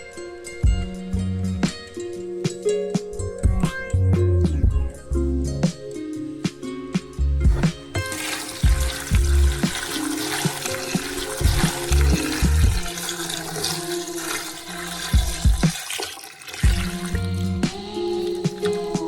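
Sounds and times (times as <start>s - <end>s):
plucked guitar music: 0.0s - 15.8s, 16.6s - 19.0s
liquid pouring into container: 7.5s - 19.0s.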